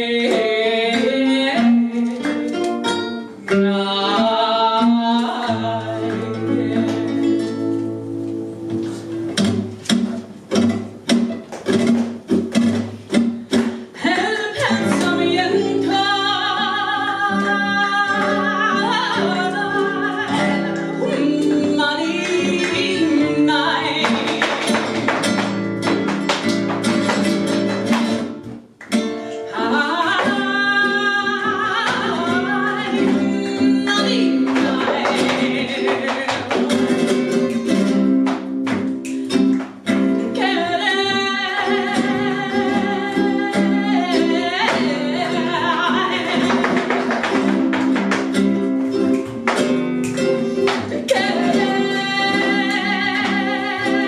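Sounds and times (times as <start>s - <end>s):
hand clapping and percussion: 0.0s - 7.1s, 8.7s - 15.7s, 17.3s - 30.8s, 34.0s - 40.4s, 41.5s - 54.0s
woman singing: 0.0s - 8.0s, 14.0s - 26.1s, 29.4s - 37.3s, 40.2s - 48.2s, 50.7s - 54.0s
flamenco guitars: 0.0s - 54.0s.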